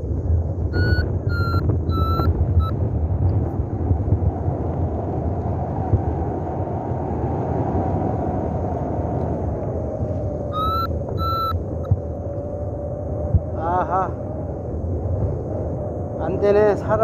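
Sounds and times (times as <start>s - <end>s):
wind rushing over microphone: 0.0s - 17.0s
variometer beep: 0.7s - 2.8s, 10.5s - 12.0s.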